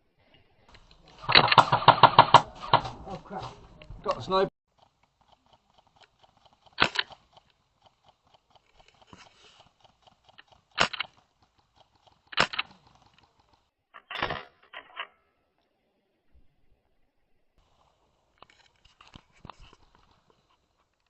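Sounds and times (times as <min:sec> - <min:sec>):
airsoft gun shots: 0:01.2 - 0:03.0.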